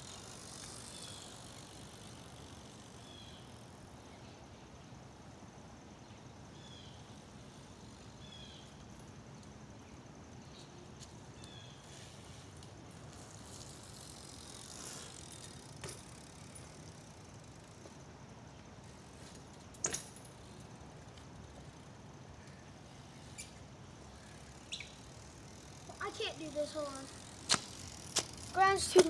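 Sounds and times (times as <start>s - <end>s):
bike tyres hissing on wet ground: 0.0s - 3.6s, 10.6s - 18.0s, 20.5s - 29.0s
outdoor background: 0.0s - 29.0s.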